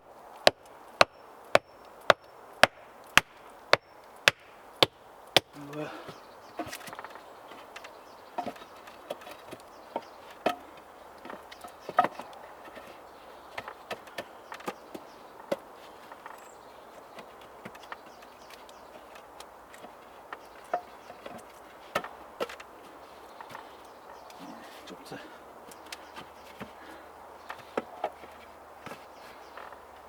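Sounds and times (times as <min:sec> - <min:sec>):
wooden sticks knocking and clicking: 0:06.6 - 0:22.7.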